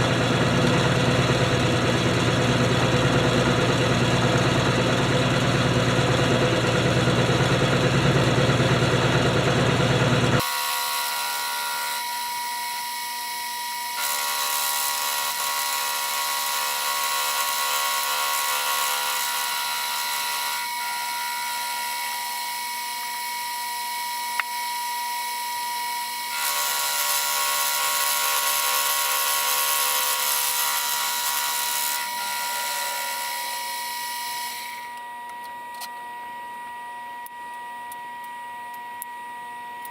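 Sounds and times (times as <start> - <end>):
power tool whining: 0.0 - 39.9.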